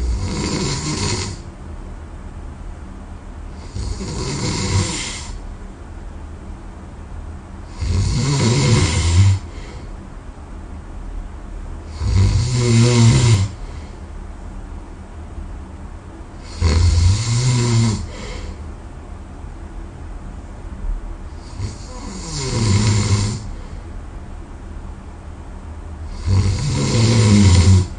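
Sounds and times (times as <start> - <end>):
person snoring loudly: 0.0 - 1.4, 3.6 - 5.4, 7.7 - 9.7, 11.9 - 13.7, 16.4 - 18.6, 21.4 - 23.6, 26.1 - 27.9
quiet breathing: 7.6 - 10.1, 12.8 - 14.2, 17.9 - 18.8, 21.3 - 24.0.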